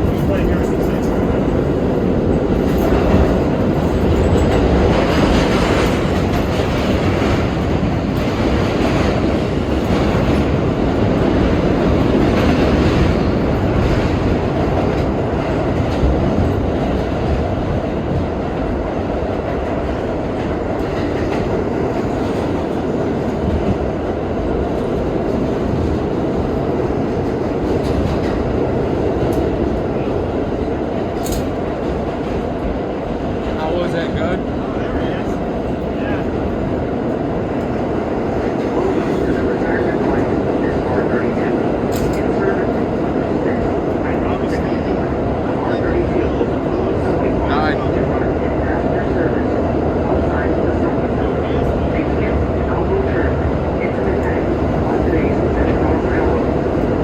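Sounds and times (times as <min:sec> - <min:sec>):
subway train wheels rumbling on rail: 0:00.0 - 0:57.0
clicks at rail joints: 0:31.2 - 0:31.6.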